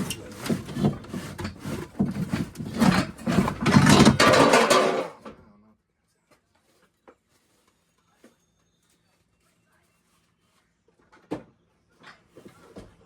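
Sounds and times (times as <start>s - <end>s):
drawer contents rattling: 0.0s - 5.2s.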